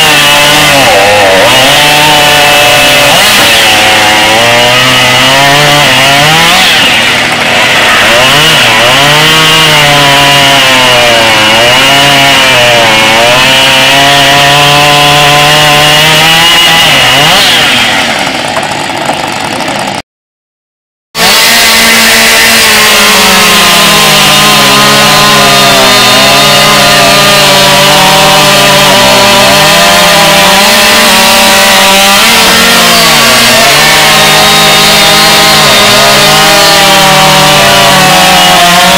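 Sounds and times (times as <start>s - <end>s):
chainsaw cutting wood: 0.0s - 20.0s, 21.2s - 38.9s.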